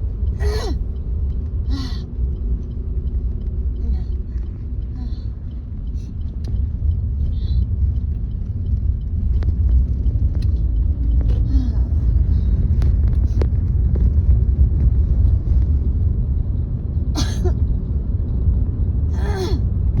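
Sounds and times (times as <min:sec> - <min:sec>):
car road rumble: 0:00.0 - 0:20.0
woman coughing: 0:17.2 - 0:17.6.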